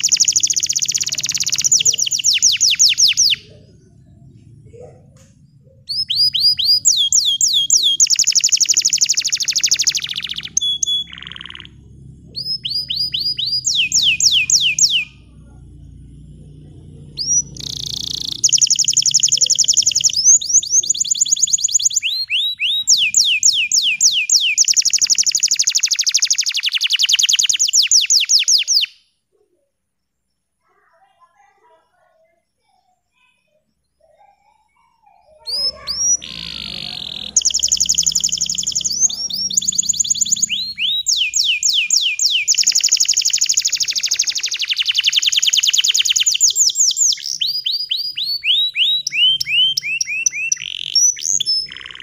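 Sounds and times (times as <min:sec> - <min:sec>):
canary singing trills: 0:00.0 - 0:52.0.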